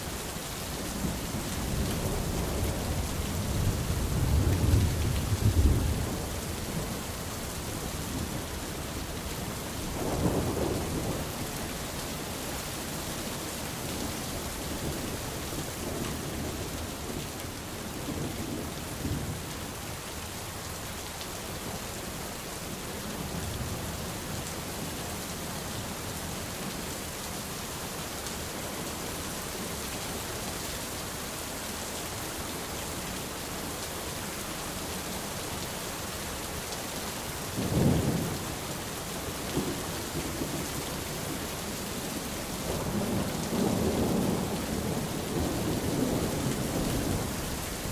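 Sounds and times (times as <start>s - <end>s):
steady rain falling: 0.0s - 47.9s
low thunder rumbling: 1.0s - 7.0s.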